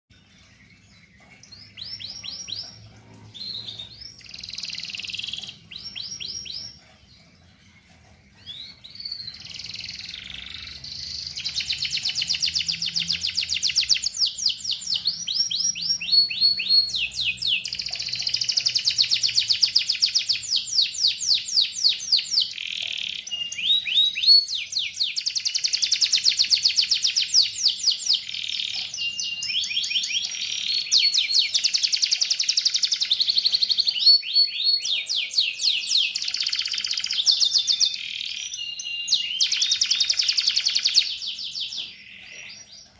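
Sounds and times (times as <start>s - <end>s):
canary singing trills: 0.1s - 42.9s.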